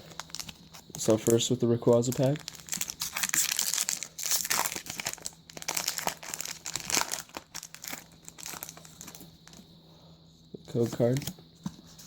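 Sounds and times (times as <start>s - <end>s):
foil wrapper crinkling and tearing: 0.0s - 9.6s.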